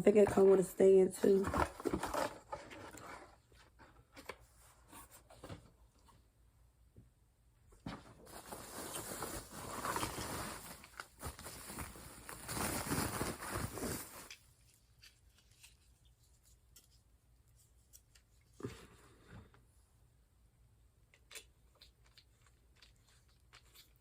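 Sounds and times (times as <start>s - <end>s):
packaging crinkling and tearing: 8.3s - 15.8s.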